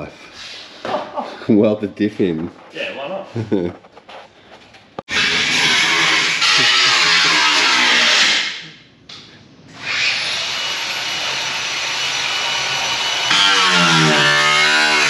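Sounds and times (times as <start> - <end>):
power tool cutting metal: 5.1 - 8.7, 9.8 - 15.0.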